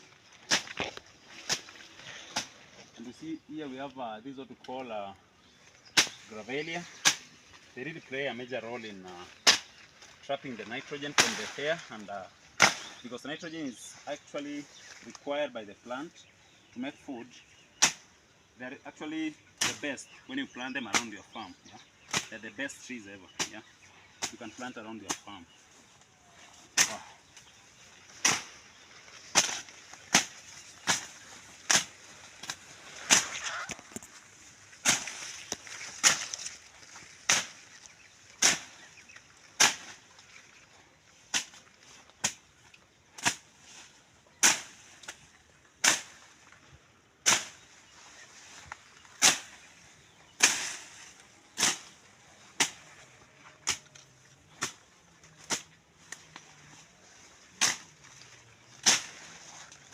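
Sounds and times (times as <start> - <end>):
blade swishing through undergrowth: 0.4 - 2.8, 5.9 - 7.7, 9.0 - 12.0, 24.2 - 40.4, 41.2 - 42.6, 43.2 - 46.4, 47.2 - 59.9.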